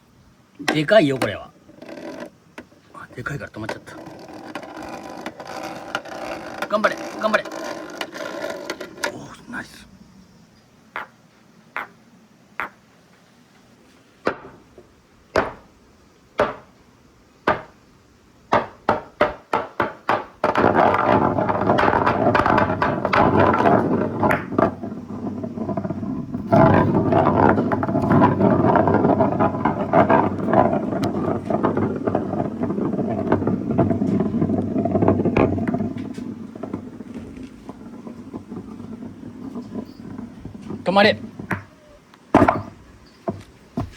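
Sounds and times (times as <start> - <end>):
marble clicks: 0.6 - 9.4, 12.6 - 12.8
marbles rolling rattle on track: 0.7 - 9.7, 18.5 - 41.7.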